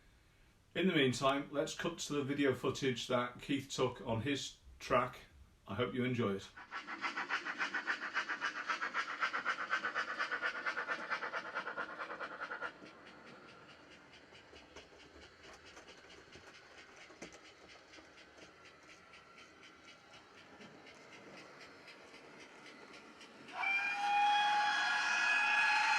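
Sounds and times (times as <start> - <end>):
model steam locomotive chuffing: 6.2 - 25.9.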